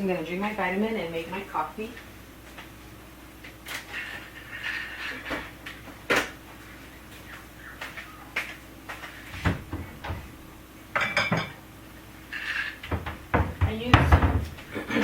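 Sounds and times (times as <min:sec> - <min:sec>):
objects knocking and clicking: 0:12.8 - 0:14.6
cupboard doors opening and shutting: 0:12.9 - 0:14.6.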